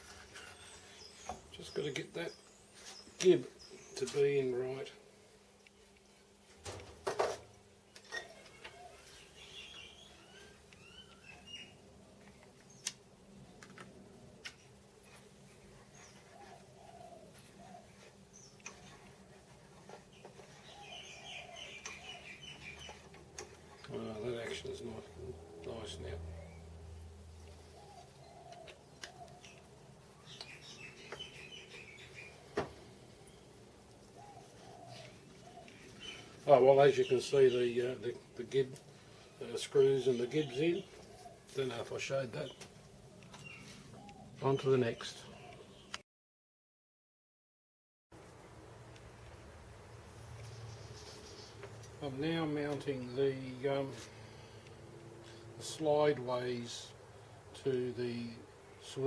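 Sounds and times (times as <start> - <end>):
faint birdsong: 0.0 - 46.0, 48.3 - 59.0
bird chirps: 7.9 - 11.8, 20.1 - 23.1, 27.4 - 33.5, 39.8 - 46.0.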